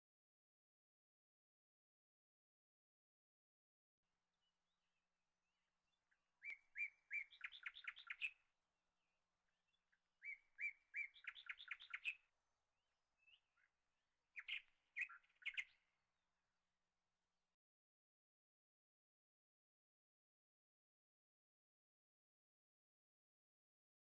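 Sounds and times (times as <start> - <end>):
songbird singing: 4.3 - 12.3, 13.2 - 16.0.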